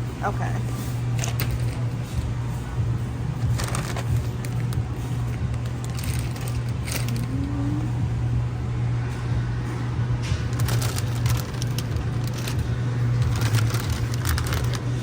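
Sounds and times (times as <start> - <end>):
low store background hum: 0.0 - 15.0
crackling and rustling: 3.4 - 7.6, 10.2 - 15.0.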